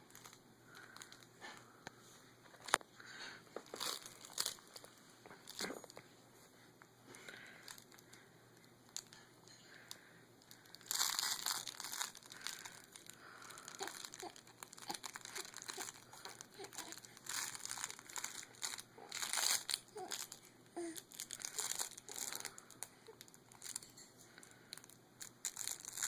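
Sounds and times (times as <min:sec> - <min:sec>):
plastic or paper crinkling: 0:03.6 - 0:06.0, 0:10.5 - 0:24.0, 0:24.7 - 0:26.0.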